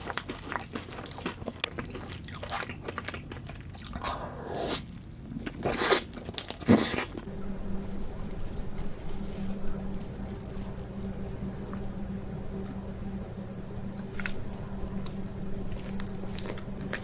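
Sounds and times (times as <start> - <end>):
crunchy bites and chewing: 0.0 - 7.3
soft wet chewing: 0.0 - 11.9, 13.9 - 17.0
steady low hum: 0.0 - 17.0.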